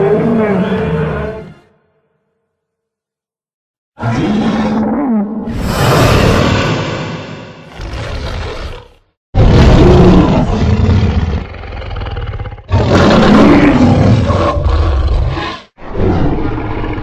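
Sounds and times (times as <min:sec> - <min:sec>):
monster roars: 0:04.0 - 0:17.0.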